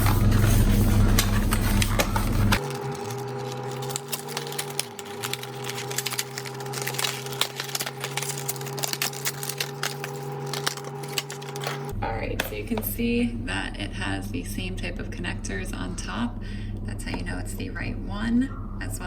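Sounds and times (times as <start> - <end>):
plastic packaging crinkling: 0.0 - 11.9
steady low hum: 0.0 - 19.0.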